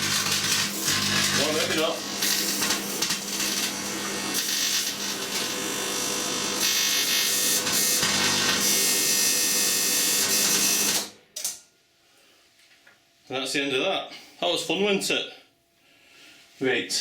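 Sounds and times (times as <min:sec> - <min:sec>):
electrical arcing crackle: 0:00.0 - 0:05.8, 0:06.6 - 0:09.2
microwave oven humming: 0:00.0 - 0:11.2.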